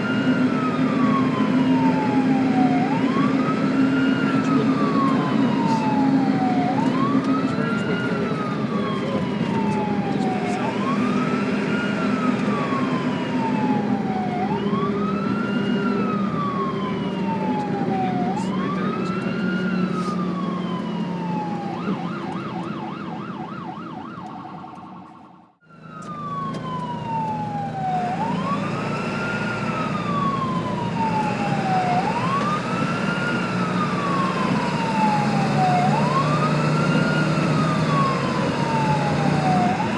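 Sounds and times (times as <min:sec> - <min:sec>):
ambulance siren wailing: 0:00.0 - 0:39.9
engine rumble: 0:00.0 - 0:39.9
siren fast yelp: 0:00.0 - 0:39.9.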